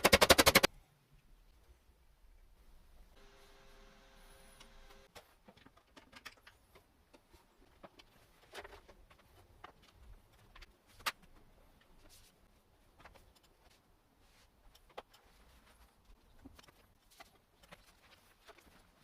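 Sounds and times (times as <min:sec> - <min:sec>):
clicks and knocks of wooden parts: 0:05.1 - 0:12.0.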